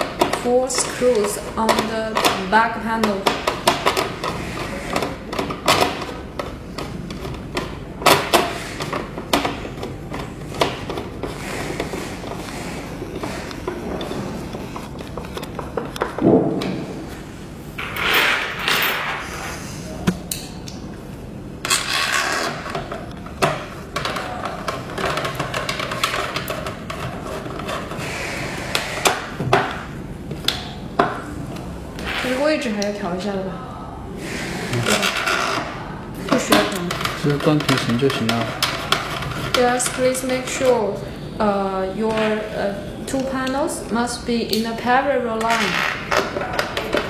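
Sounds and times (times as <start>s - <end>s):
sharp knock: 16.2s - 17.1s.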